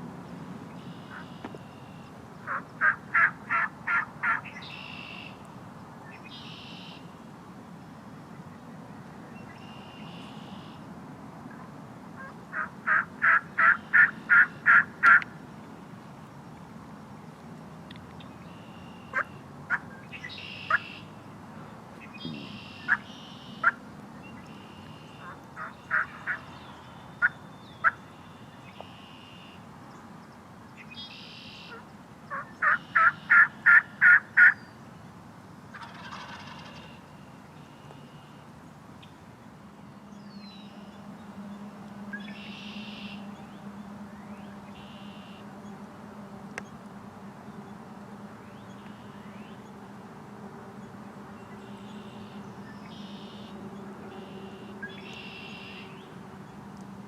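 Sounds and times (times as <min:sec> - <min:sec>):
rough bird call: 0:22.1 - 0:23.8
turkey yelps: 0:22.3 - 0:23.8, 0:25.2 - 0:26.5, 0:31.7 - 0:34.6, 0:35.8 - 0:36.9.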